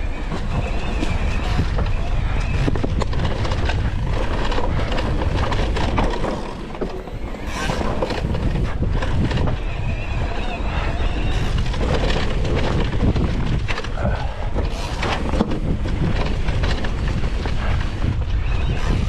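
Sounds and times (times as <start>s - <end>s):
bike clicks and rattles: 0.0s - 19.0s
tyres rumbling over dirt: 0.0s - 19.0s
wind buffeting microphone: 0.0s - 19.0s.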